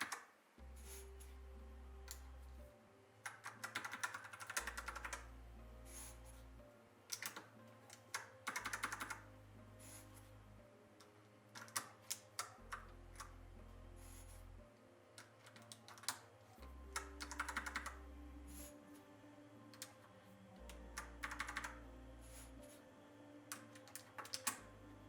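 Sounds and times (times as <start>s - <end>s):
mechanical keyboard keys clicking: 3.2s - 5.2s, 7.1s - 9.2s, 11.6s - 12.8s, 17.0s - 18.0s, 21.0s - 21.8s, 23.5s - 24.6s.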